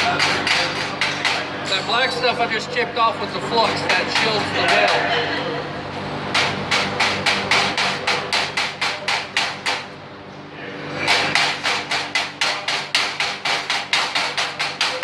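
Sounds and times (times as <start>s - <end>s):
chipping hammer tapping metal: 3.7s - 5.0s, 6.3s - 9.9s, 11.1s - 15.0s.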